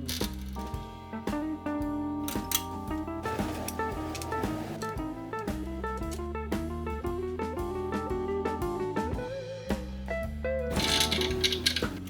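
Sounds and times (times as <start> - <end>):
steady beat: 0.0 - 12.0
plucked guitar melody: 1.1 - 9.4.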